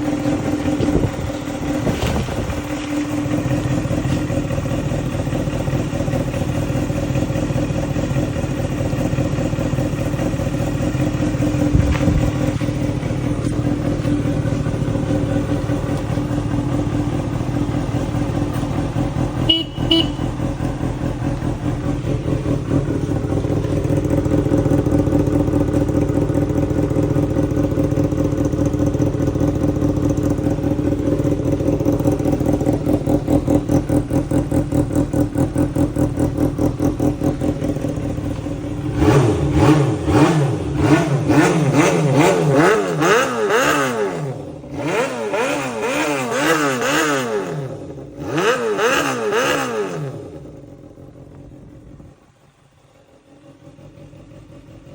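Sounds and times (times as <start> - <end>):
motorcycle engine idling and revving: 0.0 - 54.9.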